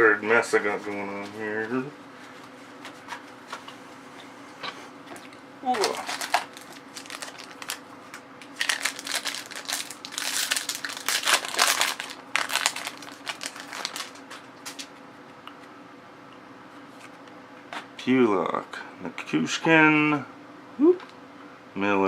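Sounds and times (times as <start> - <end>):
foil wrapper crackling: 5.7 - 7.8, 8.4 - 14.9.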